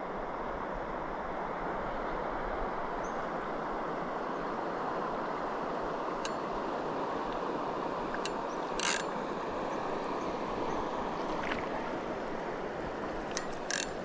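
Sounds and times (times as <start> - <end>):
river water rushing: 3.5 - 14.0
sharp clicks: 8.2 - 9.1, 13.3 - 14.0.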